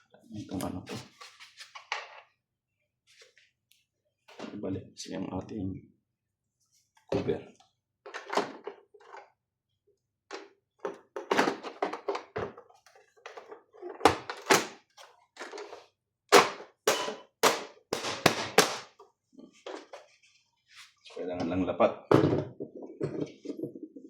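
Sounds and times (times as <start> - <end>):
plastic cover knocks and thunks: 13.9 - 14.9, 16.3 - 19.0.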